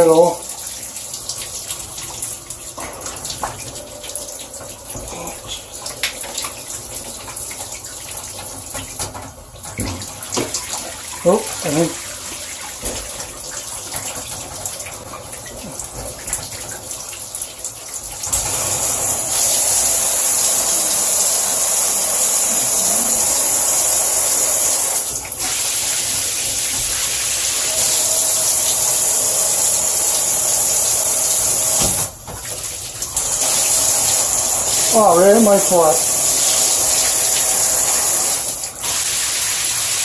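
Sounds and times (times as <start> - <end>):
shower head spraying water: 18.3 - 32.1, 33.2 - 40.0.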